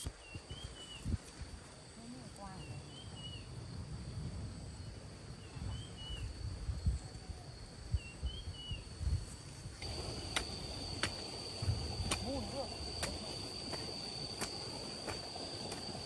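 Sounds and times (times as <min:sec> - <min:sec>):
insect drone: 0:00.0 - 0:16.0.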